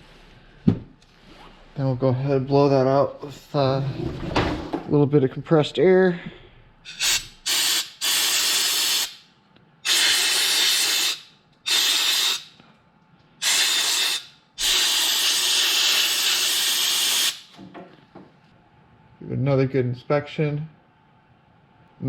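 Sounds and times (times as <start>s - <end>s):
compressed air blow gun hissing: 6.9s - 9.2s, 9.8s - 12.5s, 13.4s - 17.5s.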